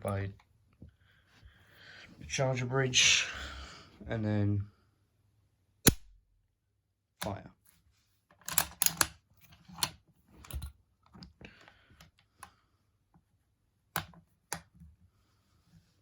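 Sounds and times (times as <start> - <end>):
rifle bolt clicks and rasp: 5.9 - 6.1, 8.4 - 9.9
sharp snaps of firing pin: 5.9 - 6.2.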